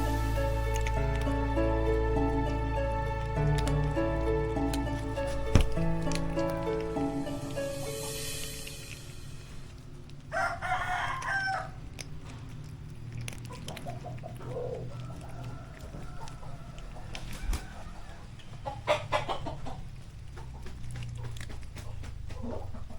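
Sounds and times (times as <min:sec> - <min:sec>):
rooster crowing: 0:10.3 - 0:11.8, 0:14.9 - 0:18.3
chickens clucking: 0:13.5 - 0:22.9.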